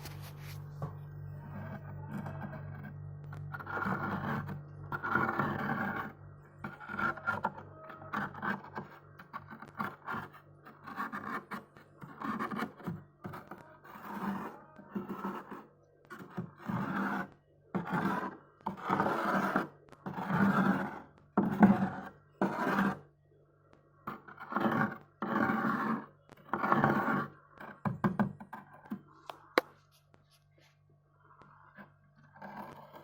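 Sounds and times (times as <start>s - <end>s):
bowl scraping frost: 0.0s - 0.8s, 13.3s - 21.1s
faint steady hum: 0.0s - 33.0s.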